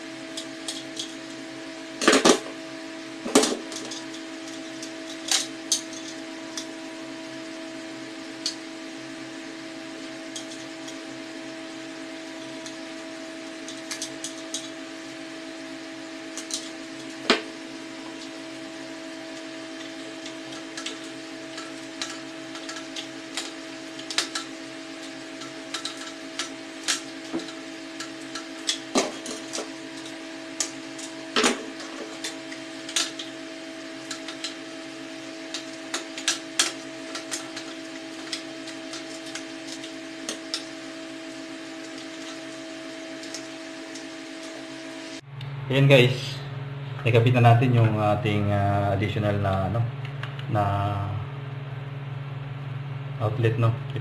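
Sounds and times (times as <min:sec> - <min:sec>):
low electrical hum: 0:00.0 - 0:54.0
small tools clicking and tapping: 0:16.4 - 0:16.7, 0:19.8 - 0:33.3, 0:34.0 - 0:34.6, 0:35.5 - 0:40.7.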